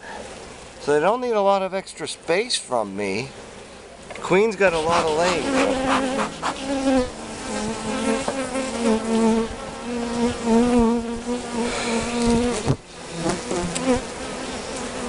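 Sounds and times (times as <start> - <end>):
honeybees buzzing: 4.2 - 15.0.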